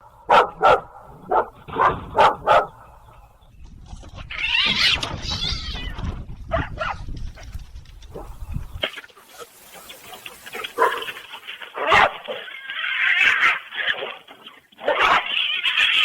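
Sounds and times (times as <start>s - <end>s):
dog barking: 0.2s - 2.8s, 6.5s - 7.0s, 10.7s - 11.1s, 11.8s - 12.4s, 14.8s - 15.3s
rushing hissing noise: 8.8s - 11.8s.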